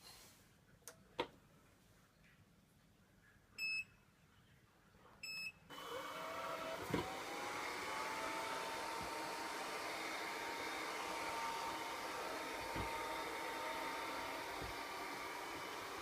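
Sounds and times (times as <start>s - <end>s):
motor whine: 5.7s - 16.0s.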